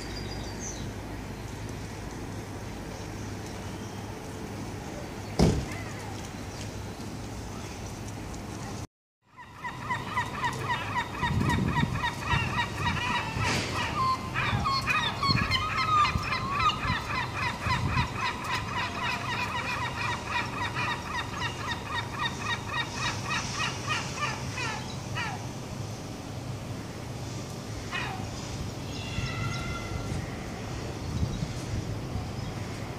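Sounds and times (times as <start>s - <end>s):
gulls calling: 9.3s - 25.6s, 26.8s - 31.0s.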